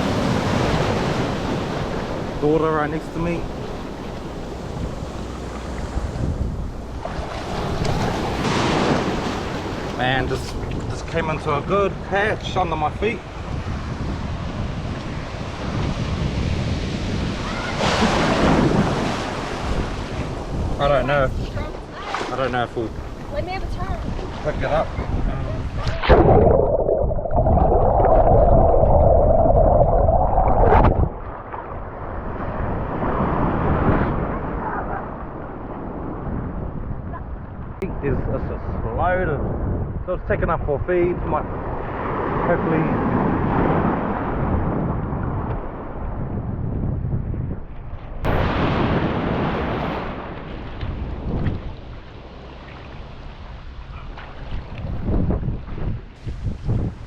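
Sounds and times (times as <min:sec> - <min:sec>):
surf water rushing and gurgling: 0:00.0 - 0:36.6, 0:40.2 - 0:46.0, 0:48.2 - 0:57.0
soft wash of waves: 0:00.0 - 0:46.5, 0:47.5 - 0:57.0
wind buffeting microphone: 0:00.0 - 0:57.0
loud rush of water: 0:17.4 - 0:20.2.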